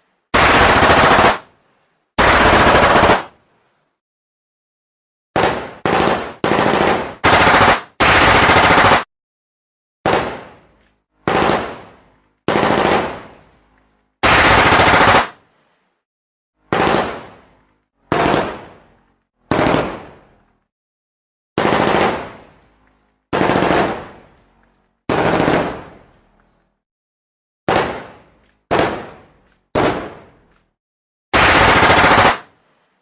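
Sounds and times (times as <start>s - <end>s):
automatic gunfire bursts: 0.4s - 1.4s, 2.2s - 3.3s, 5.4s - 9.1s, 11.3s - 11.8s, 12.5s - 13.2s, 14.2s - 15.4s, 19.5s - 20.0s, 21.6s - 22.3s, 23.3s - 24.1s, 25.1s - 25.9s, 31.4s - 32.5s.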